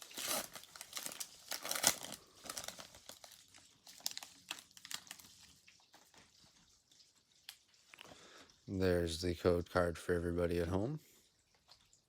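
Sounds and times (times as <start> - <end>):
foil wrapper crinkling: 0.0 - 6.5.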